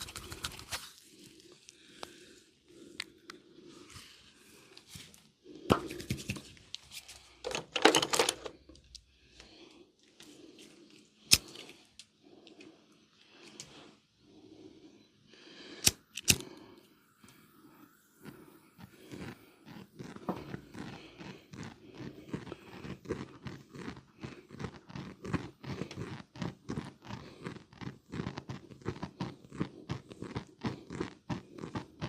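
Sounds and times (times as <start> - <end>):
sharp clicks: 15.8 - 16.5.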